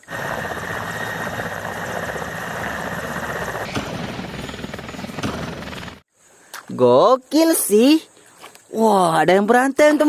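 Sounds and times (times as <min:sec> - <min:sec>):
helicopter rotor and engine: 0:00.0 - 0:06.1.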